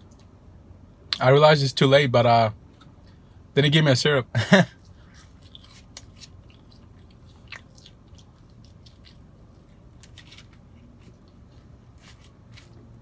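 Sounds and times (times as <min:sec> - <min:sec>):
close-up chewing: 0:04.8 - 0:13.0.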